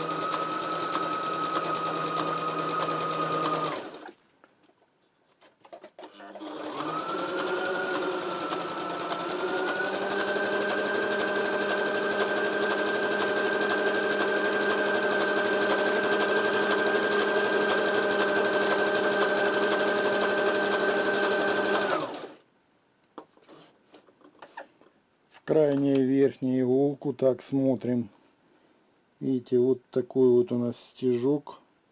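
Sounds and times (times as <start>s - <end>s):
sewing machine sewing: 0.0s - 4.2s, 5.7s - 22.4s.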